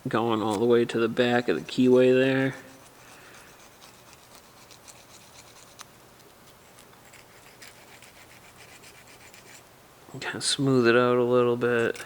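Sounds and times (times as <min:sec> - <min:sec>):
hand file scratching metal: 0:00.4 - 0:05.9, 0:06.5 - 0:09.7.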